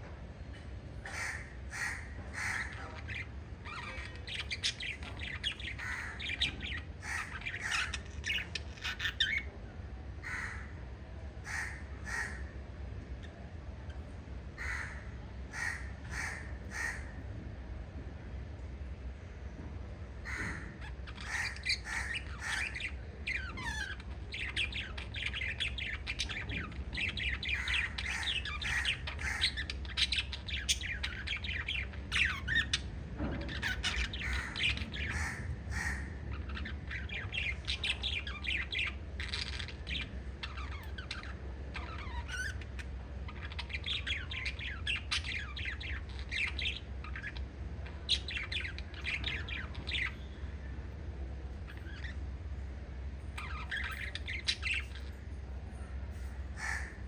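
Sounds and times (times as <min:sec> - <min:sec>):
steady low hum: 0:00.0 - 0:57.0
parrots chirping and squawking: 0:00.9 - 0:09.5, 0:10.2 - 0:10.8, 0:11.4 - 0:12.6, 0:13.2 - 0:17.2, 0:20.2 - 0:57.0.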